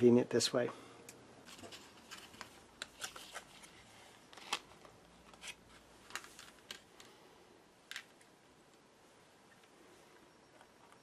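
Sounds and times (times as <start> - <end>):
packaging rustling: 1.4 - 7.2.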